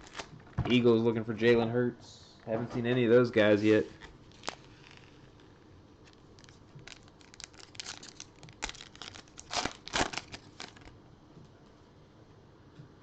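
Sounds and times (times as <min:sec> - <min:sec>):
wrapper tearing and crinkling: 0:03.9 - 0:11.0.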